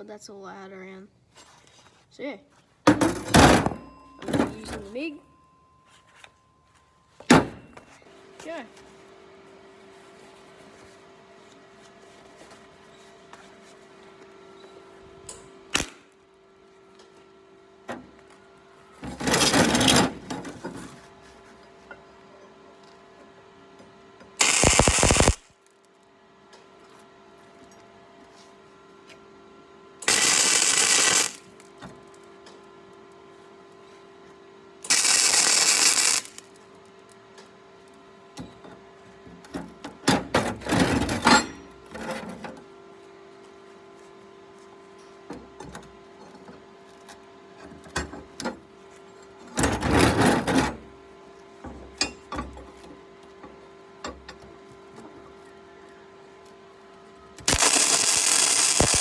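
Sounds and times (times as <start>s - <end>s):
steady hum: 24.4s - 25.5s, 30.0s - 31.6s, 34.9s - 36.5s, 57.5s - 59.0s
welding arc crackling: 24.4s - 25.5s, 30.0s - 31.6s, 34.9s - 36.5s, 57.5s - 59.0s.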